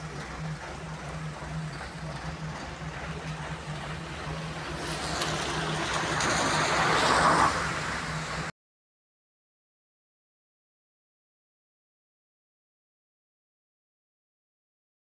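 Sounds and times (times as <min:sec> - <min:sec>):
heavy machine engine droning: 0:00.0 - 0:08.5.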